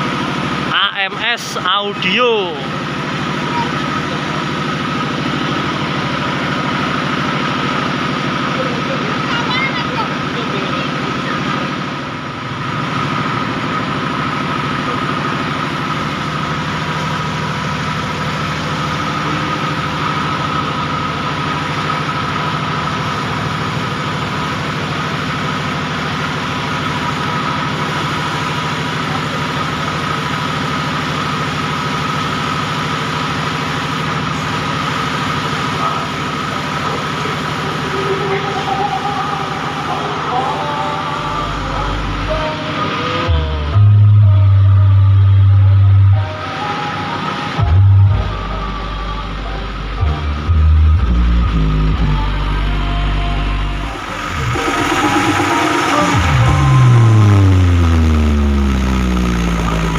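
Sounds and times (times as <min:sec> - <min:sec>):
engine idling: 0:00.0 - 0:59.9
steady high tone: 0:36.8 - 0:59.9.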